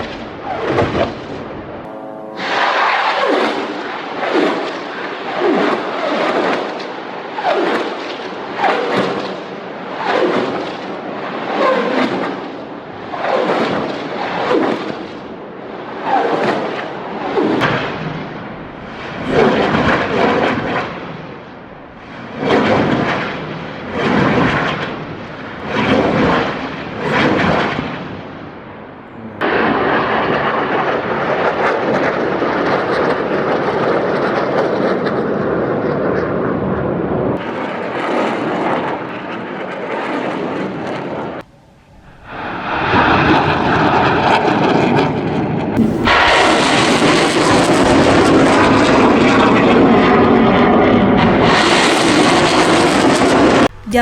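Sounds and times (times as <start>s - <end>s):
steady roar: 0.0s - 6.6s, 45.8s - 54.0s
loud weapon blasts: 45.8s - 49.3s.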